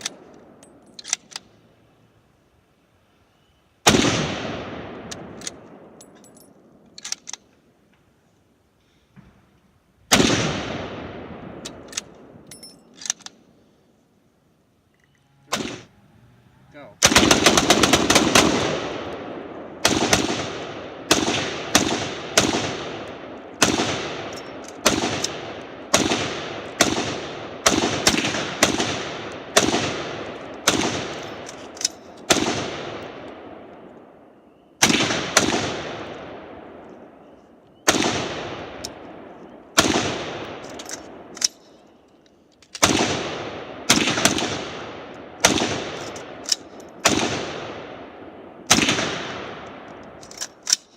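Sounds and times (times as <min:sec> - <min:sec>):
gunshots echoing: 0:03.8 - 0:06.2, 0:10.1 - 0:12.4, 0:15.5 - 0:15.9, 0:17.0 - 0:34.2, 0:34.8 - 0:41.6, 0:42.8 - 0:50.7.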